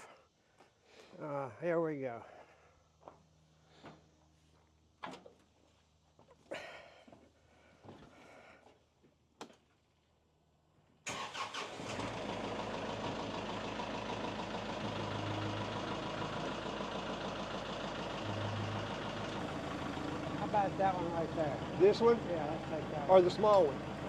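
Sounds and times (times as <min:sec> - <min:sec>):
tractor engine starting and idling: 0:11.0 - 0:24.0.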